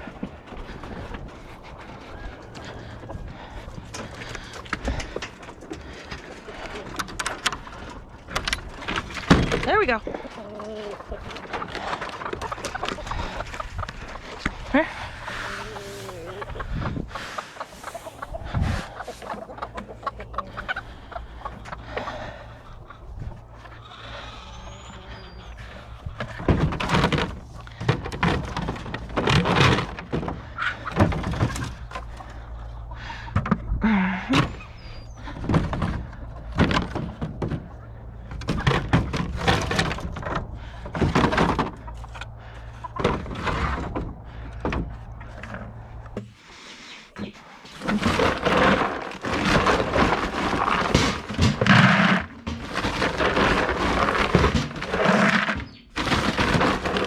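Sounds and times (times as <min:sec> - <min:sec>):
objects knocking and clattering: 0:26.1 - 0:32.5, 0:35.2 - 0:46.3, 0:47.8 - 0:57.0.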